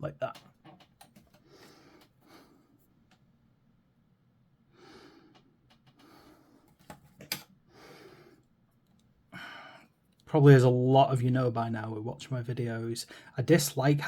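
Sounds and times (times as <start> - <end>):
faint breathing: 1.3 - 2.9, 4.7 - 6.9, 7.7 - 8.5, 9.3 - 10.0, 13.1 - 13.4.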